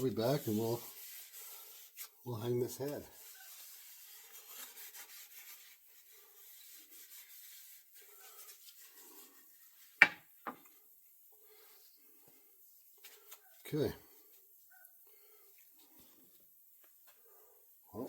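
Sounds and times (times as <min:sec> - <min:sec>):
rubbing on wooden handle: 0:00.0 - 0:10.0.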